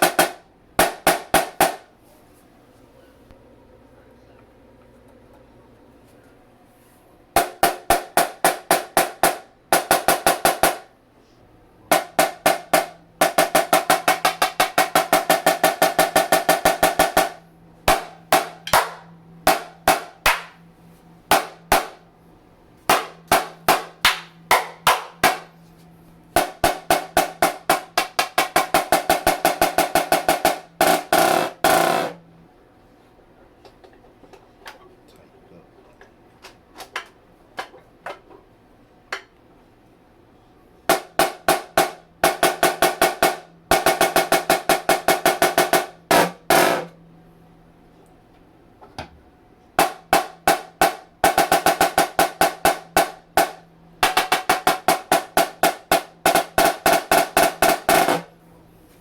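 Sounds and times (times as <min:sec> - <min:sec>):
marching snare drum: 0:00.0 - 0:01.9, 0:07.4 - 0:10.9, 0:11.9 - 0:20.6, 0:21.3 - 0:22.0, 0:22.9 - 0:25.6, 0:26.4 - 0:32.2, 0:40.9 - 0:46.9, 0:49.8 - 0:58.3.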